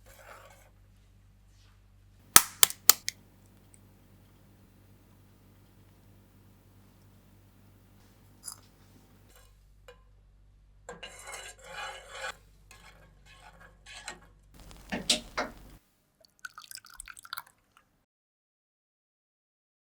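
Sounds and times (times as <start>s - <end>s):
spoon stirring and scraping: 11.2s - 15.8s.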